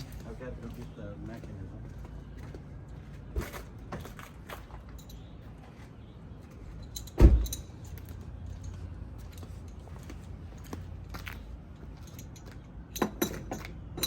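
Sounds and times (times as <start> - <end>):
light clicks and clinks: 4.2 - 5.3, 6.7 - 14.0.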